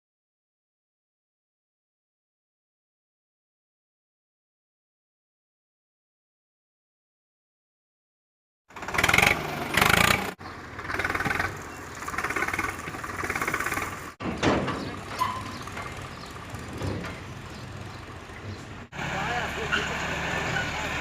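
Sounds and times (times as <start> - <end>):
machinery engine running: 8.7 - 21.0.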